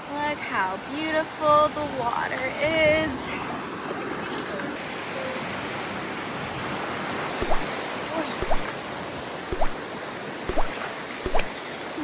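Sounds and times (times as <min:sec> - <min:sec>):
sharp clicks with rising chirp: 0:07.3 - 0:07.7, 0:08.4 - 0:08.7, 0:09.5 - 0:09.8, 0:10.5 - 0:11.5.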